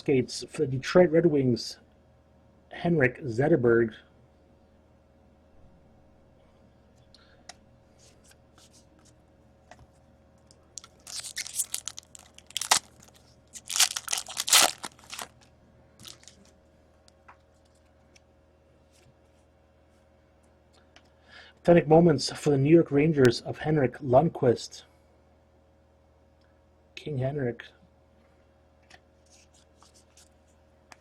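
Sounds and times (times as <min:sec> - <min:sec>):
foil wrapper tearing and crinkling: 0:10.8 - 0:15.4, 0:16.0 - 0:16.5.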